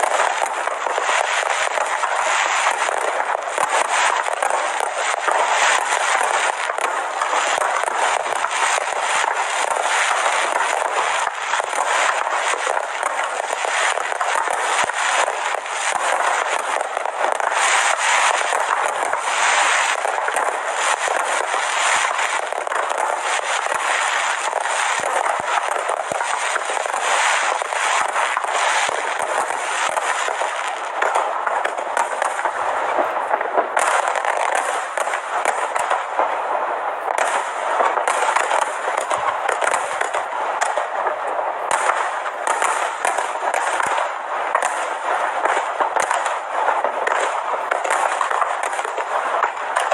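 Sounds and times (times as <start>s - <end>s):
fireworks crackling and popping: 0.0s - 49.9s.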